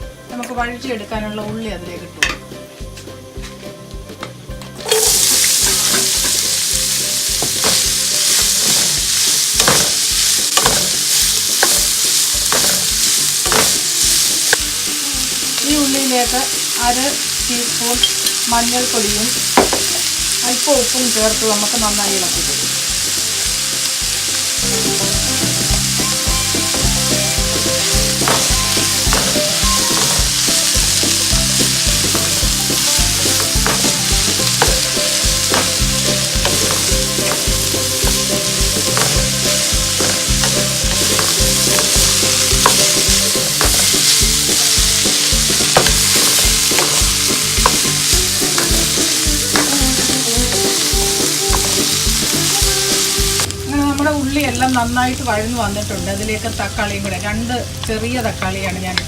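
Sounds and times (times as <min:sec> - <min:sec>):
spoon scraping and tapping pan: 0:04.6 - 0:14.7, 0:18.0 - 0:18.5, 0:27.9 - 0:52.4
onions sizzling in oil: 0:04.7 - 0:59.0.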